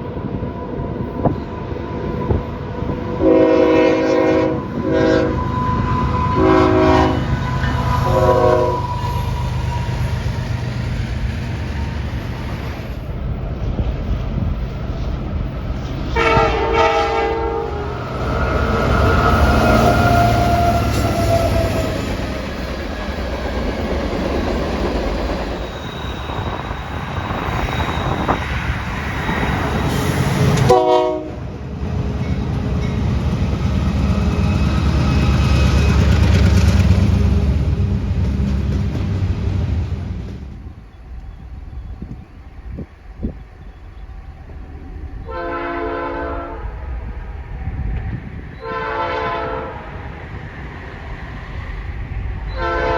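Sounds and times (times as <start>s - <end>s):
train passing rumble: 0.0s - 52.9s
locomotive air horn: 3.2s - 10.0s, 16.1s - 22.0s, 29.9s - 31.4s, 45.2s - 46.8s, 48.6s - 50.0s, 52.5s - 52.9s.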